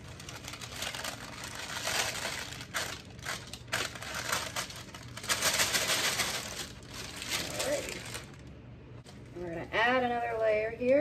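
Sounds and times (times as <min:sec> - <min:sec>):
hard plastic pieces crinkling: 0:00.0 - 0:08.5.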